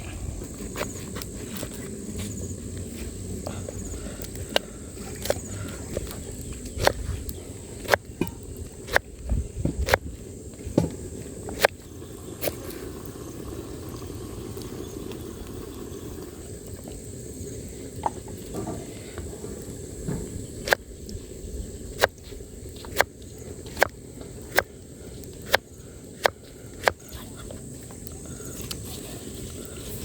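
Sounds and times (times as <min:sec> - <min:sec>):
steady low rumble: 0:00.0 - 0:00.8.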